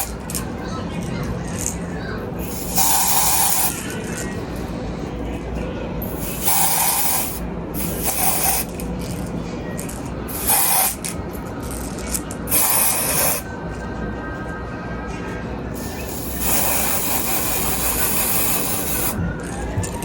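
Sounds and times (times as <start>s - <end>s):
aerosol spray hissing: 2.4s - 3.8s, 6.1s - 8.7s, 10.3s - 11.0s, 12.5s - 13.4s, 15.8s - 19.2s.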